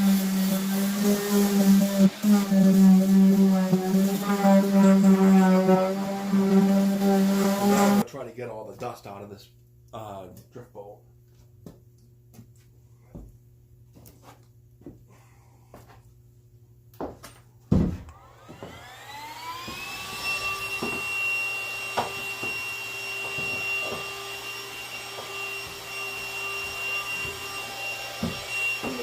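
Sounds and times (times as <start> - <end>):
shop vacuum whining: 0.0 - 8.0, 18.0 - 29.0.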